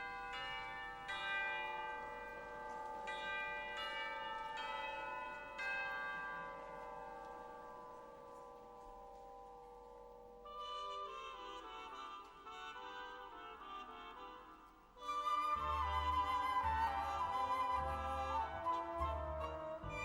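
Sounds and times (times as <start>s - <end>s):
bells ringing: 0.0s - 11.7s.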